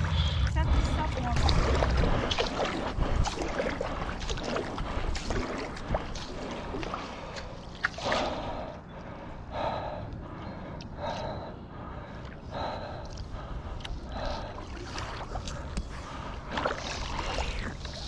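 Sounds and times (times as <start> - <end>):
water washing: 0.6 - 8.7, 12.6 - 18.0.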